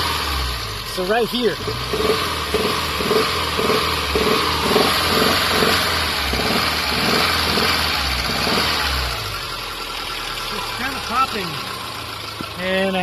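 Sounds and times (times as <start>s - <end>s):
car engine at raised revs: 0.0s - 13.0s.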